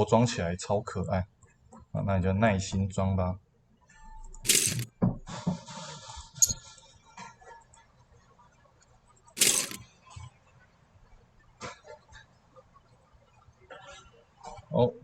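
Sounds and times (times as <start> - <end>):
plastic bricks clinking: 4.4 - 4.9, 9.4 - 9.8
rustling bursts: 9.4 - 9.8.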